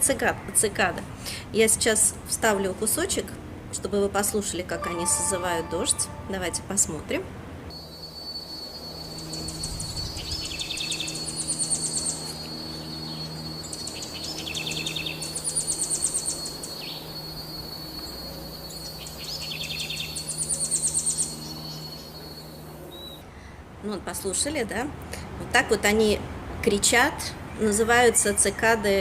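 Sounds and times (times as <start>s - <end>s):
cicadas buzzing: 7.8s - 23.2s.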